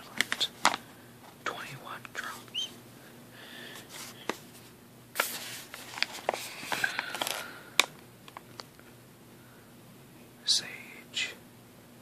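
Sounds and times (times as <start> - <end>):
plastic bag crinkling: 5.2 - 7.6.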